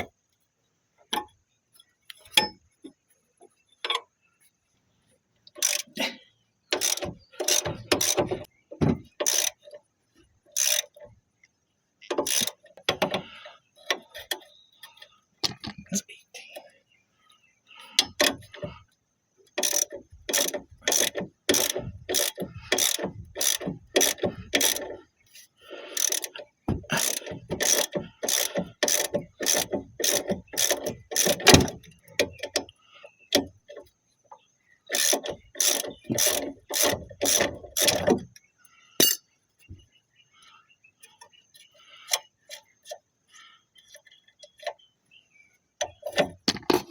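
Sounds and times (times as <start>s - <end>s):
ratchet wrench clicking: 5.5s - 6.0s, 6.7s - 9.8s, 10.5s - 11.0s, 12.1s - 13.2s, 19.5s - 25.0s, 25.9s - 33.7s, 34.9s - 38.4s, 39.0s - 39.2s.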